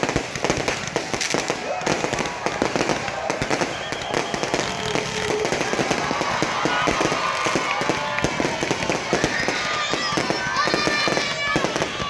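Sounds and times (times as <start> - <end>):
fireworks popping and crackling: 0.0 - 12.0.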